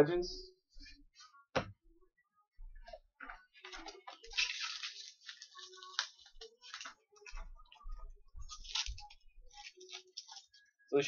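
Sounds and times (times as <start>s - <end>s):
wrappers crinkling: 3.6s - 7.5s, 8.5s - 10.7s.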